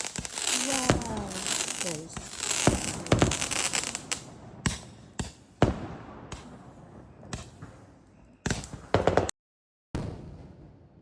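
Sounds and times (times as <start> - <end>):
fireworks rumble and crackle: 0.0 - 9.3, 10.0 - 11.0
fireworks banging: 0.0 - 9.4.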